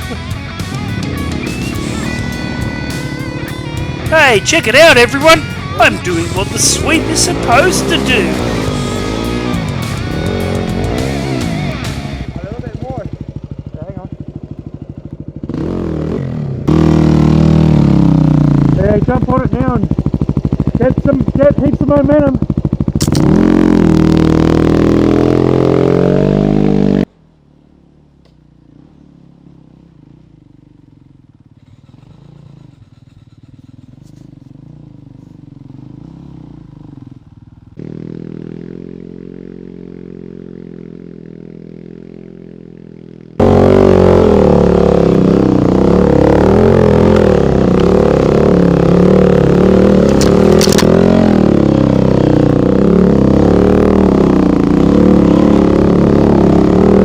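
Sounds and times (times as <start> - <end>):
faint distant dirt bike engine: 0.0 - 26.1
dirt bike engine labouring: 0.0 - 27.9, 28.6 - 57.0.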